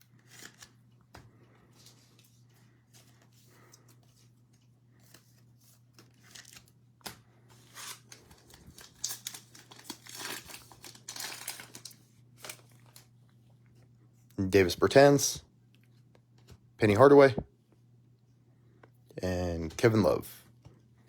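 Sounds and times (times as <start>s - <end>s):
faint steady hum: 0.0s - 21.0s
cards being handled: 0.1s - 13.2s
plastic wrapper tearing and crinkling: 6.0s - 13.1s.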